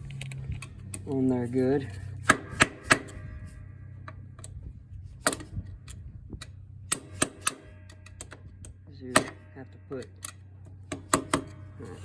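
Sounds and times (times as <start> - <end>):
hammer tapping metal part: 10.9 - 11.6.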